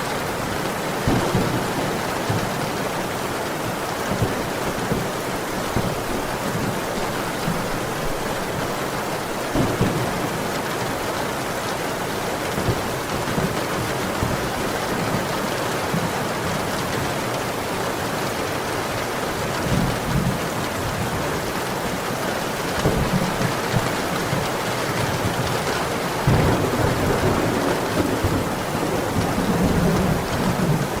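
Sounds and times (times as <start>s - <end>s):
heavy rain: 0.0s - 31.0s
low rolls of thunder: 9.5s - 10.6s, 26.2s - 31.0s.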